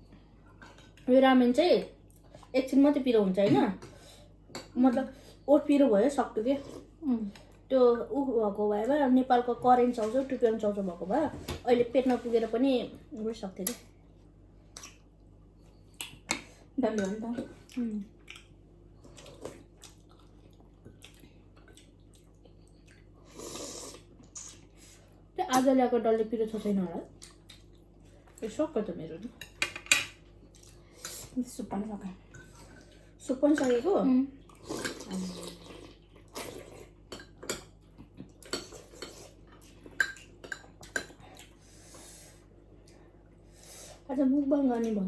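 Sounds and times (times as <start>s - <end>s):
wet chewing: 17.6s - 23.1s.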